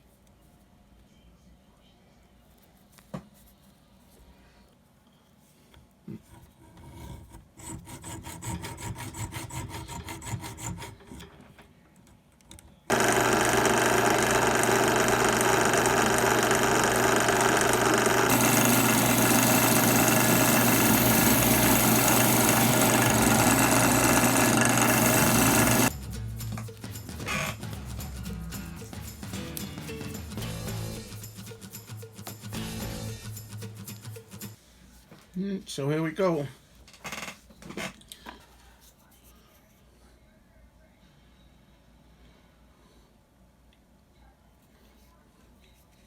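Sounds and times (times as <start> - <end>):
power tool running: 12.9 - 25.9.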